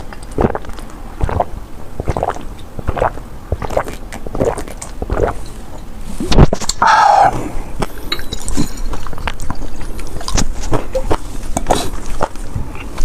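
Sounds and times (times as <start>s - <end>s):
wet noodle chewing: 0.0s - 5.8s, 7.8s - 13.0s.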